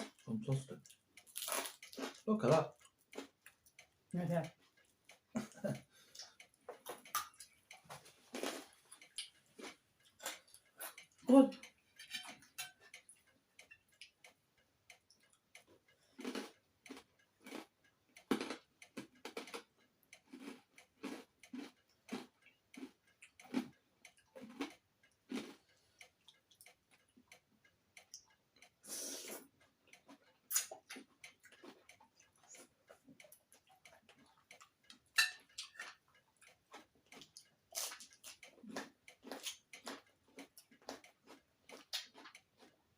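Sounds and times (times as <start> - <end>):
mouth smacks chewing food: 4.8 - 11.2, 15.0 - 27.1, 29.0 - 42.8
noisy crunch: 7.9 - 10.5.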